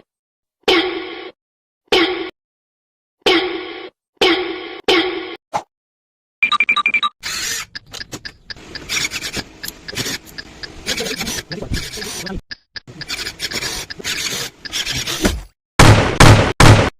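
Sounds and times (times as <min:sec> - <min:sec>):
short clicks: 0:07.2 - 0:15.2
packaging rubbing and scraping: 0:13.2 - 0:15.5.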